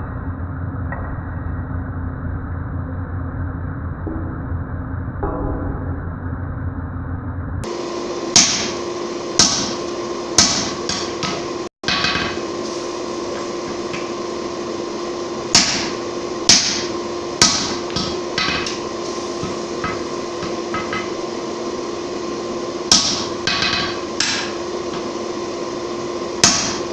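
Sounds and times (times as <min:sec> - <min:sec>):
steady hum: 0:00.0 - 0:26.9
hammer striking steel on anvil: 0:08.3 - 0:08.8, 0:09.4 - 0:12.6, 0:15.5 - 0:21.3, 0:22.9 - 0:25.2, 0:26.4 - 0:26.9.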